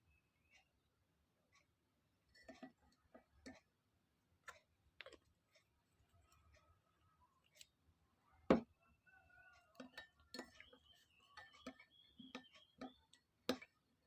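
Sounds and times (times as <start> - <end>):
spoon tapping glass: 9.7 - 13.8.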